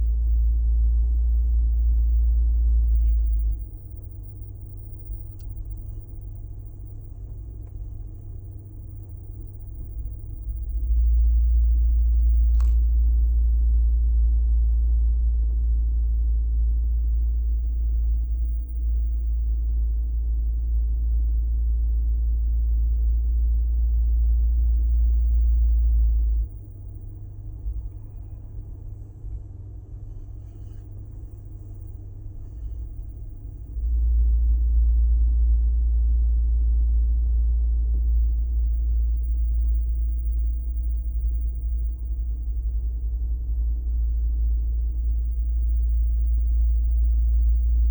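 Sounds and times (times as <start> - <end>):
deep droning hum: 0.0 - 47.9
vehicle-like rumble: 0.0 - 47.9.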